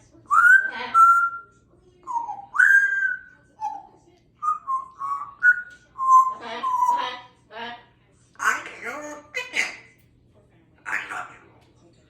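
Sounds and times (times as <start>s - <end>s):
parrot whistling: 0.3s - 1.5s, 2.1s - 7.0s.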